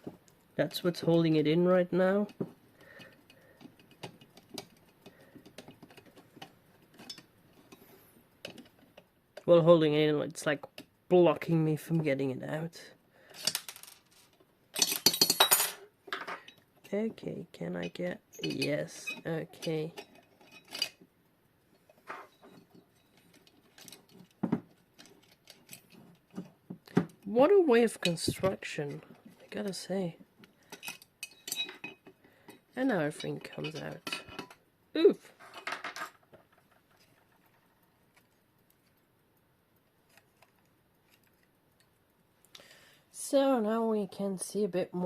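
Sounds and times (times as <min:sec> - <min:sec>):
tools clicking on small metal parts: 0:02.2 - 0:07.8, 0:13.3 - 0:14.0, 0:14.7 - 0:16.7, 0:23.0 - 0:26.2, 0:30.7 - 0:34.6.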